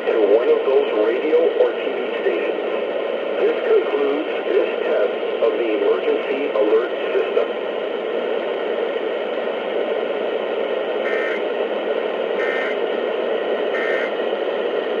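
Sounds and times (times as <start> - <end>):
radio static hiss: 0.0 - 15.0
warbling data bursts: 12.4 - 12.8, 13.7 - 14.2.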